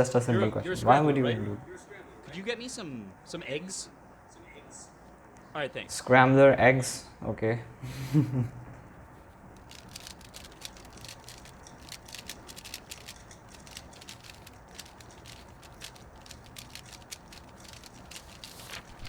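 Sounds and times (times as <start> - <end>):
irregular clicking and rattling: 8.7 - 19.0.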